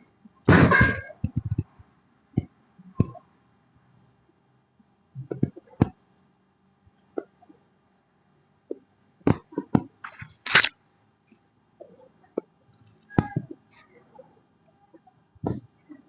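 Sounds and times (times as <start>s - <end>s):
sharp clicks and pops: 1.2s - 1.8s, 8.7s - 10.7s.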